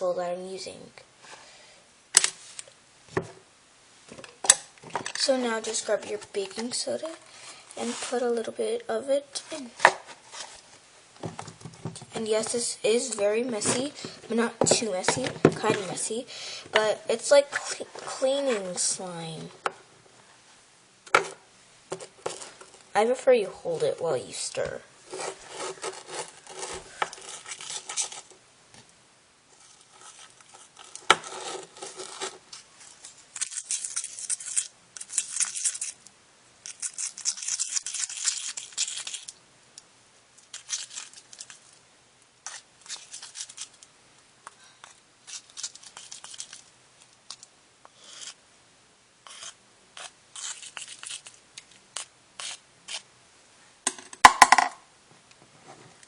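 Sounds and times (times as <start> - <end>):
chopstick scraping a container: 25.1 - 28.3, 36.6 - 39.3, 48.1 - 48.4, 49.3 - 51.4.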